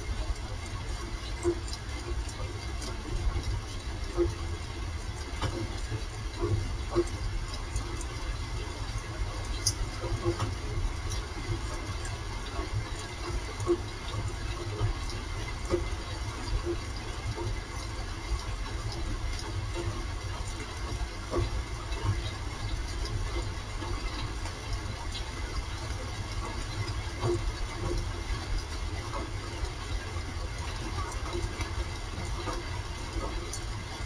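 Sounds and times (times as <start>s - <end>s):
rain taps: 0.0s - 34.0s.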